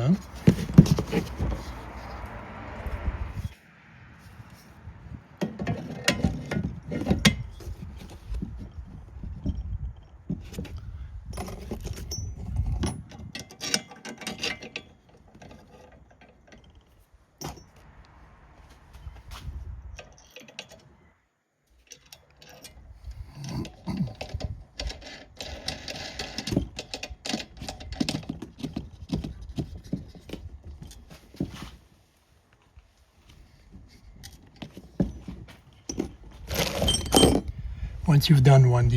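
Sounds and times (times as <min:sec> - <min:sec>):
metal tools clinking: 0:11.3 - 0:17.8, 0:35.0 - 0:37.5.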